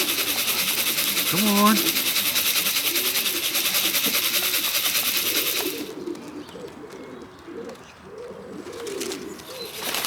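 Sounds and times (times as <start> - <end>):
grain rattling in a tin: 0.0 - 6.0
pigeons cooing: 0.0 - 10.0.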